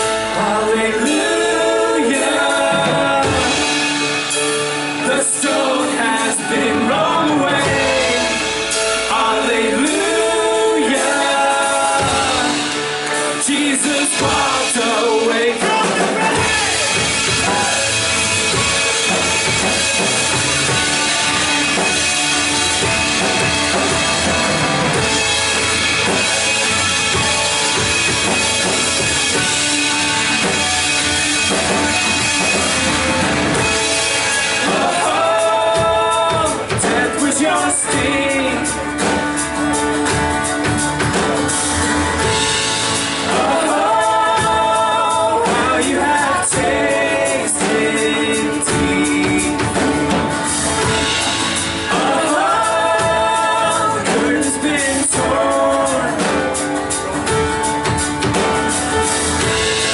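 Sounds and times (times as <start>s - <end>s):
person singing: 0.0s - 24.0s, 33.6s - 40.8s, 43.2s - 57.3s
drum kit: 0.0s - 59.9s
worship band playing: 0.0s - 59.9s.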